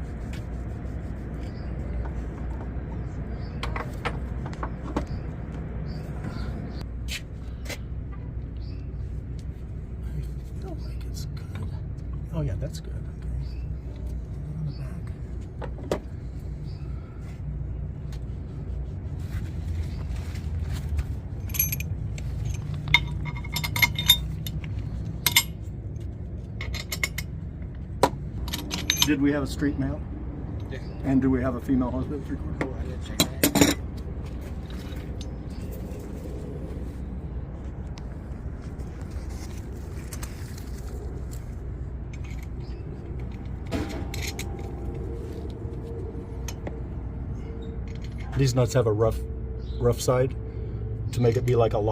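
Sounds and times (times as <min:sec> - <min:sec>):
ringing metal clink: 0:21.4 - 0:24.5, 0:28.5 - 0:29.2
metal hardware clicking: 0:21.4 - 0:25.6
small metal parts clinking: 0:21.4 - 0:25.7, 0:26.5 - 0:27.4, 0:28.4 - 0:29.2, 0:42.1 - 0:45.1, 0:47.6 - 0:48.4
low rumble: 0:33.7 - 0:48.3.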